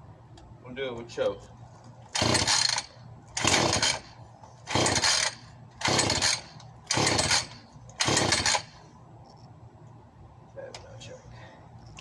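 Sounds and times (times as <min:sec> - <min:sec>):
chainsaw recoil starter pulls: 0:02.2 - 0:04.1, 0:04.7 - 0:08.7.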